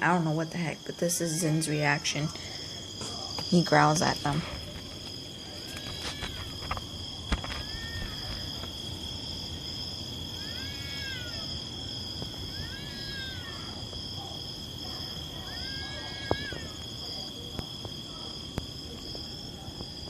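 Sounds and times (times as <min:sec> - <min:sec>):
crickets chirring: 0:00.0 - 0:20.0
distant cats yowling: 0:05.4 - 0:08.7, 0:10.3 - 0:16.8.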